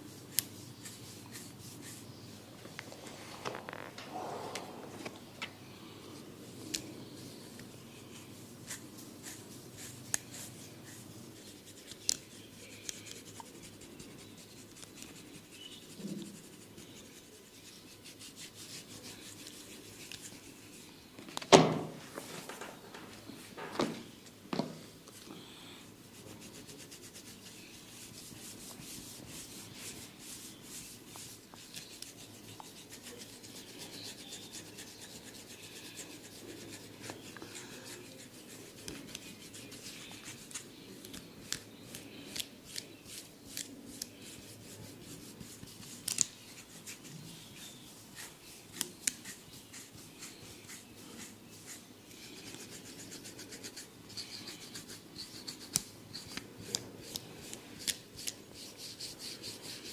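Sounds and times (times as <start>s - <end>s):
hair and scalp rubbing: 0.0s - 2.3s, 26.1s - 56.4s.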